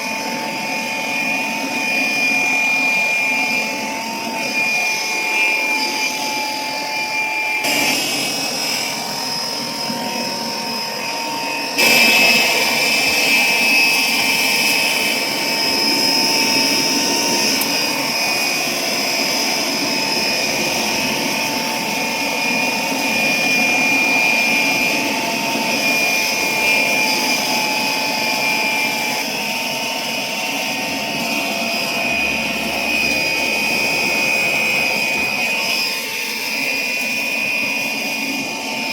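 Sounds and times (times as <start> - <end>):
air blower whining: 0.0 - 38.9.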